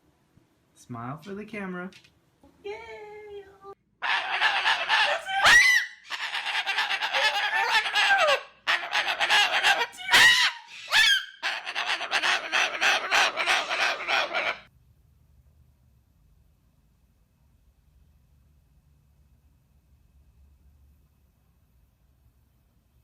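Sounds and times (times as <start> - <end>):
birds squawking and honking: 4.0 - 14.7
sharp rising and falling bird calls: 4.0 - 14.7.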